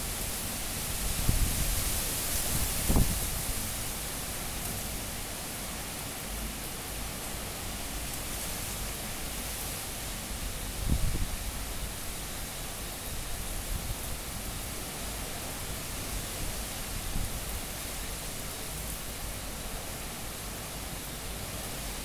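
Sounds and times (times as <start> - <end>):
strong wind hissing: 0.0 - 4.1
wind buffeting microphone: 0.8 - 3.8.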